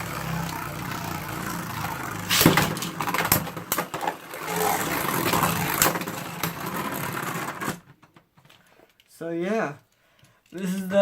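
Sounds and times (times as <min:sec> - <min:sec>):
spinning tops whirring: 0:00.0 - 0:07.8
tops clacking together: 0:01.8 - 0:08.5.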